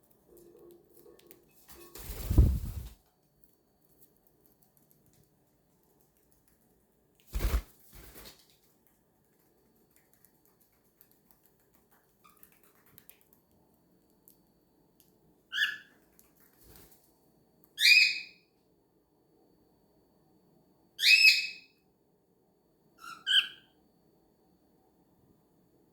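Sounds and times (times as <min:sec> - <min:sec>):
cockatiel whistled chirps: 0:17.8 - 0:18.4, 0:21.0 - 0:21.8, 0:23.0 - 0:23.7.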